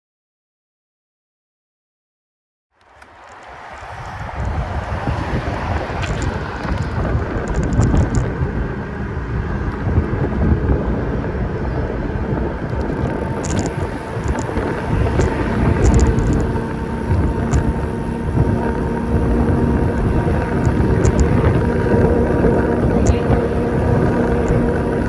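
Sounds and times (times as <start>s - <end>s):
road noise: 2.8s - 25.0s
wind buffeting microphone: 2.9s - 25.0s
faint ticks: 12.7s - 25.0s.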